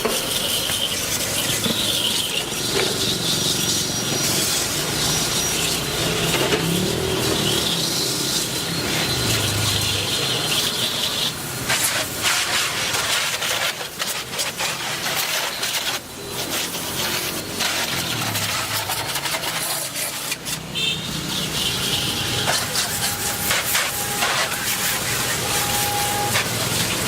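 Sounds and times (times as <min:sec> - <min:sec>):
rubbing and scraping noises: 0:10.5 - 0:27.0.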